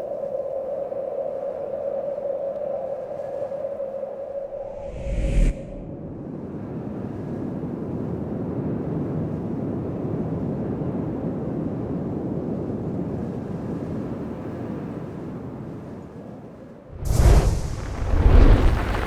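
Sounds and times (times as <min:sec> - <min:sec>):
wind blowing: 0:02.3 - 0:06.9, 0:16.9 - 0:19.0.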